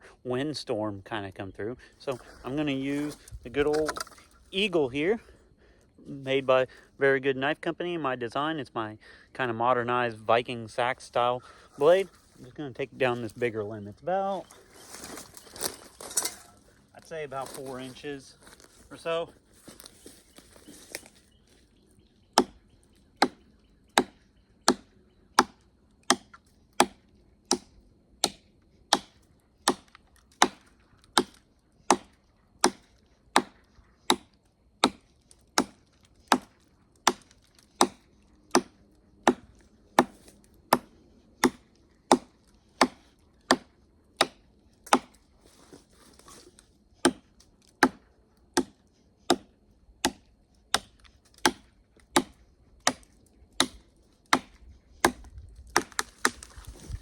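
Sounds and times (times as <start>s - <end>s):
knife chopping into wood: 25.4s - 35.0s, 35.6s - 45.2s, 46.2s - 48.0s, 48.6s - 56.9s.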